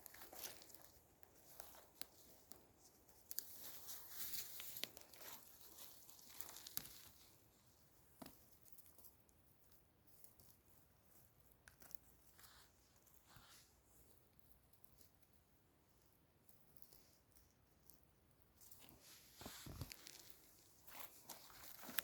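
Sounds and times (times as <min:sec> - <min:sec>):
forest litter rustling and crackling: 0:00.0 - 0:09.1, 0:18.6 - 0:22.0.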